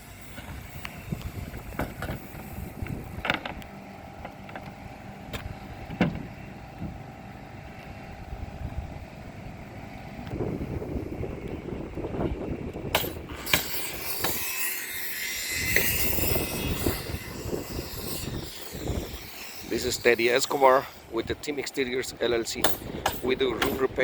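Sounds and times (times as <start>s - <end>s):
steady low rumble: 0.0s - 13.5s.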